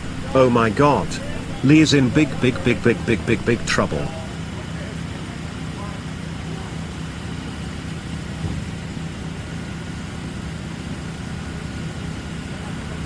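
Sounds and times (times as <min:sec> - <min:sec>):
steady low rumble: 0:00.0 - 0:04.2.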